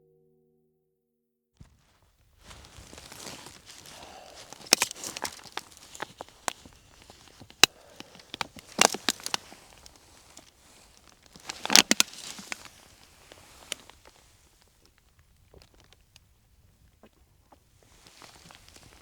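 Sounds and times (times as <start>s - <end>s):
crunches and sharp clicks: 2.5s - 12.8s.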